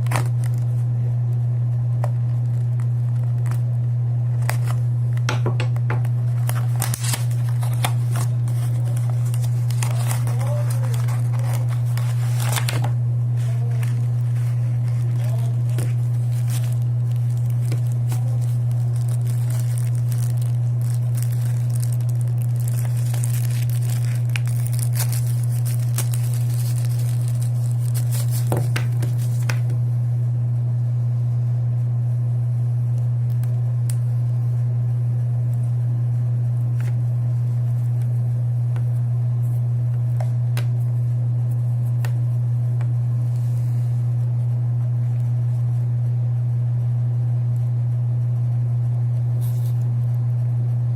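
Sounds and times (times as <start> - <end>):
packaging crinkling and tearing: 0.0 - 0.8, 4.3 - 4.8, 6.0 - 29.8
loud steady low hum: 0.0 - 50.9.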